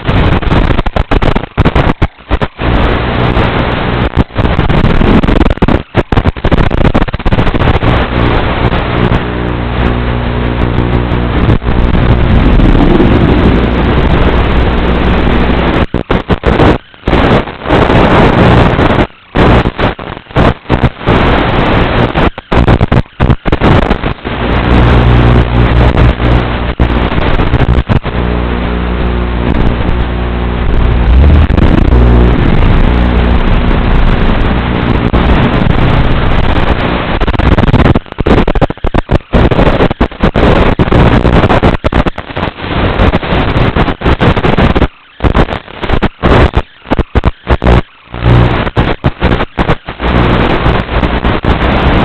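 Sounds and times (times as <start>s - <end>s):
low steady hum: 7.3s - 44.7s, 45.6s - 52.0s
wind buffeting microphone: 10.6s - 25.0s, 30.7s - 42.1s.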